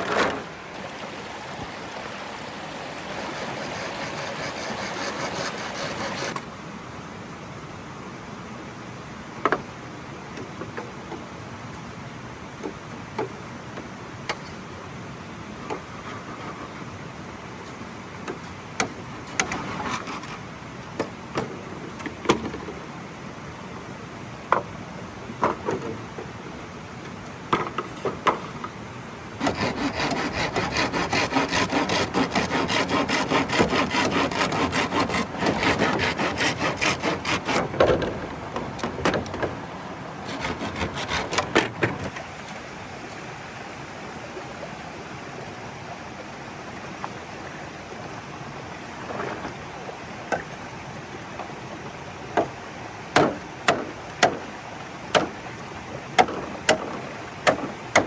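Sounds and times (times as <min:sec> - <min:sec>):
hand saw rasping through wood: 0:00.8 - 0:06.4, 0:19.2 - 0:20.4, 0:29.4 - 0:38.1, 0:40.2 - 0:41.8
knocks and scrapes on wood: 0:03.0 - 0:06.4, 0:19.2 - 0:20.4, 0:29.4 - 0:39.6, 0:40.3 - 0:42.6.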